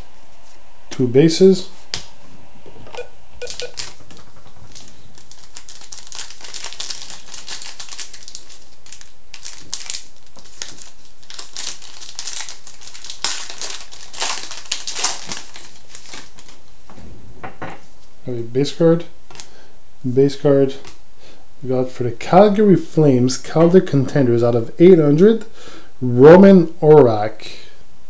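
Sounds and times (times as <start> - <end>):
card pack wrapper crinkling: 3.5 - 16.6
wrapper crackles: 3.6 - 16.6.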